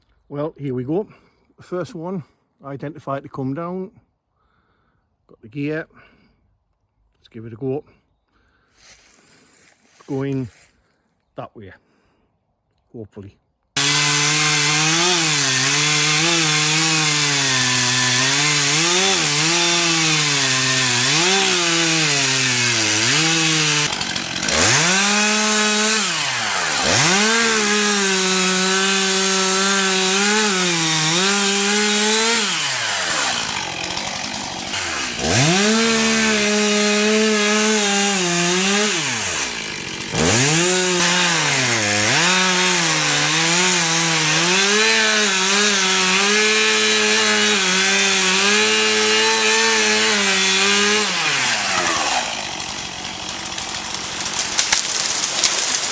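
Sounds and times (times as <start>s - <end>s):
chainsaw cutting tree trunk: 13.8s - 55.9s.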